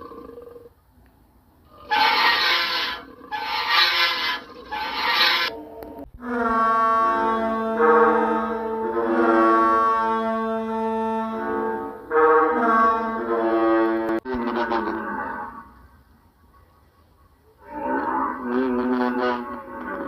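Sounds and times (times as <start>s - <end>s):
rough roar-like dinosaur call: 0.0s - 0.7s, 1.7s - 6.0s, 14.3s - 16.0s, 17.6s - 20.0s
deep horn-like calls: 1.7s - 20.0s.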